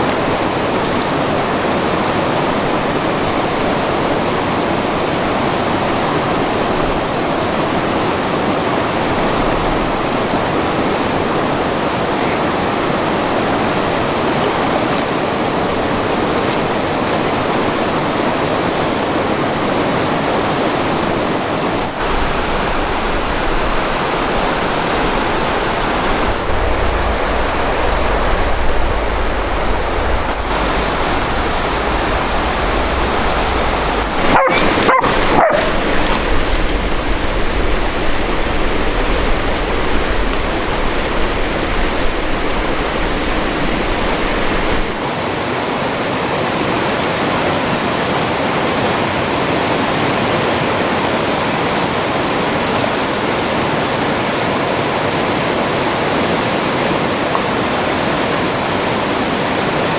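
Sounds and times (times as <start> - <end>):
rushing stream water: 0.0 - 59.9
dog yelping: 34.2 - 35.8.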